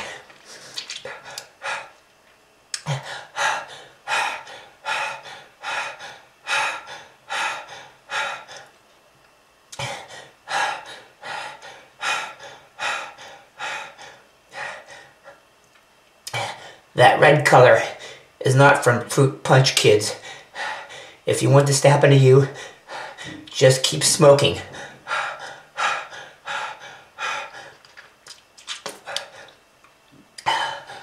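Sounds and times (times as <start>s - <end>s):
person gasping for breath: 2.8s - 8.7s, 9.8s - 15.4s.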